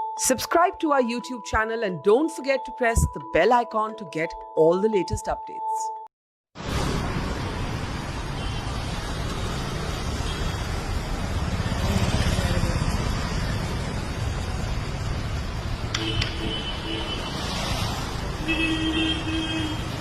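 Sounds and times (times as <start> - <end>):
road traffic: 6.6 - 20.0.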